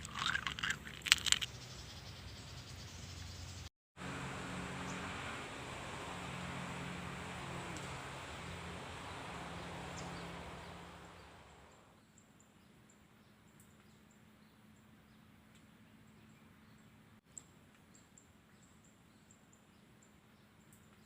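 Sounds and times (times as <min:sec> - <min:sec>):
rushing noise with low hum: 0:04.0 - 0:11.9.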